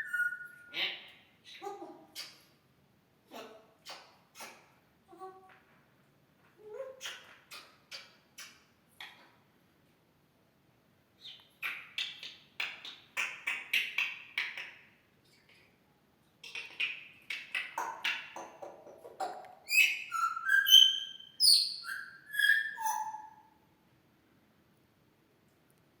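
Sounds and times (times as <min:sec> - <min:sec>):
parrot whistling: 0:00.0 - 0:00.7, 0:19.7 - 0:23.4
parrot raspy calls: 0:00.0 - 0:02.5.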